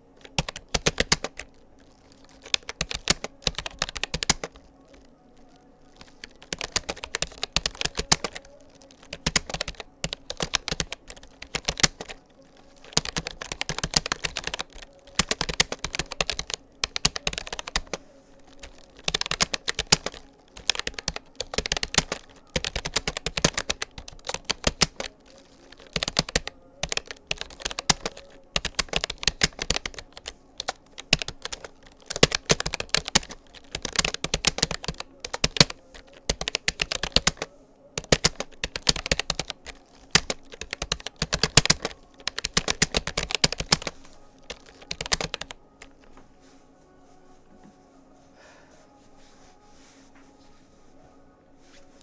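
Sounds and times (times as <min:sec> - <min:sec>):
keyboard key clicks: 0:25.7 - 0:45.9.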